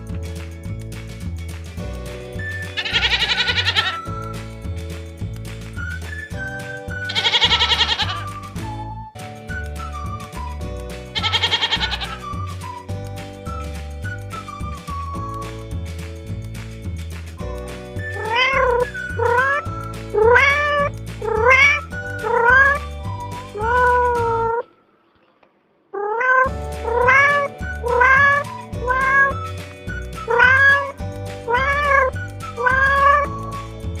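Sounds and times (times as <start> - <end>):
background music with steady beat: 0.0 - 24.5, 26.5 - 34.0
cat meowing: 2.8 - 4.1, 7.1 - 8.4, 11.2 - 12.2, 18.2 - 19.6, 20.2 - 22.8, 26.0 - 29.5, 30.3 - 33.4.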